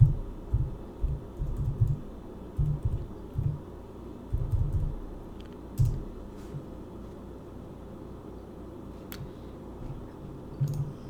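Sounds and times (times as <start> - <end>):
keyboard typing dull thuds: 0.0 - 3.7, 4.3 - 5.2, 5.8 - 6.2.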